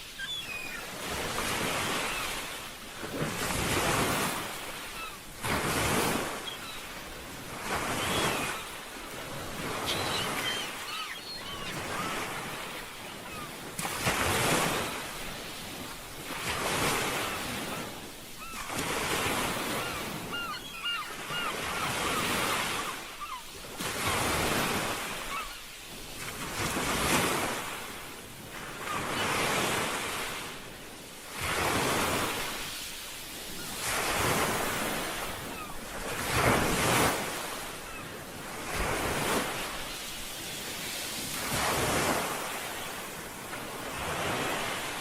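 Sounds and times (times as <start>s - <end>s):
sea waves breaking on shore: 0.0s - 45.0s
high bird chirps: 0.2s - 0.8s, 9.8s - 12.2s.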